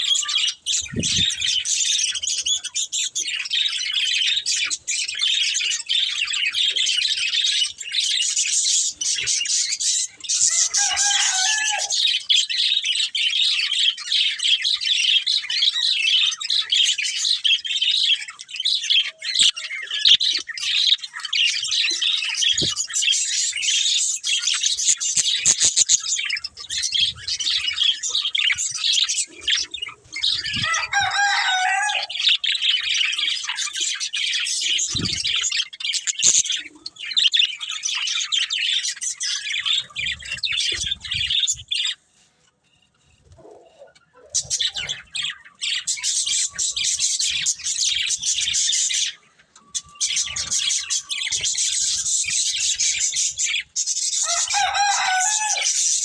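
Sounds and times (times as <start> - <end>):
budgerigars chattering: 0.0 - 42.0, 43.5 - 49.2, 49.8 - 56.0.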